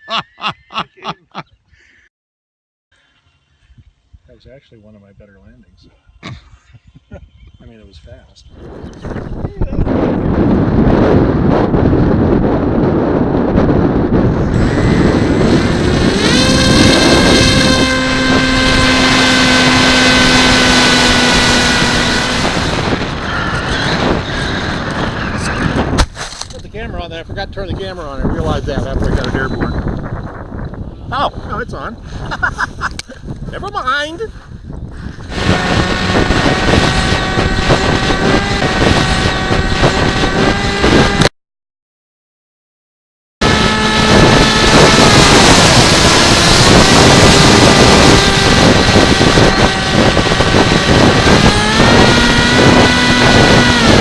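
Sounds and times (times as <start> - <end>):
wind buffeting microphone: 5.1 - 41.3, 43.4 - 54.0
model airplane motor whining: 14.1 - 25.9, 35.0 - 41.3, 43.4 - 54.0.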